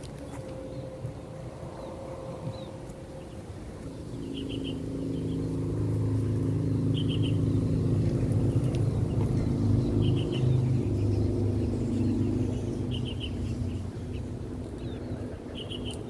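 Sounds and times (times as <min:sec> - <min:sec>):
vehicle engine running: 0:04.3 - 0:14.5.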